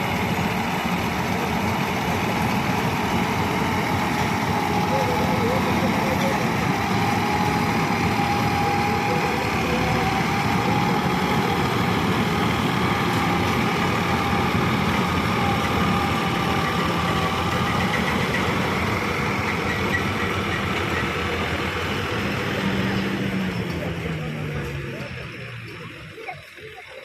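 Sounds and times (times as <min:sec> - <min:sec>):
tractor engine running: 0:00.0 - 0:27.0.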